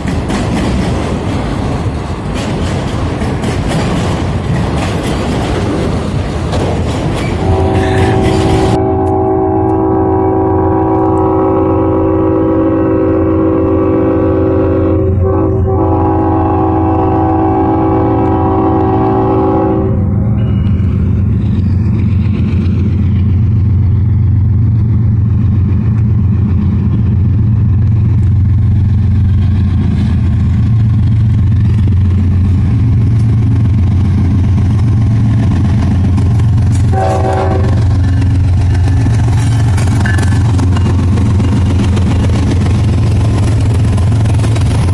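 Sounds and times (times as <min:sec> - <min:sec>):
locomotive air horn: 0:07.4 - 0:20.2, 0:36.8 - 0:38.0.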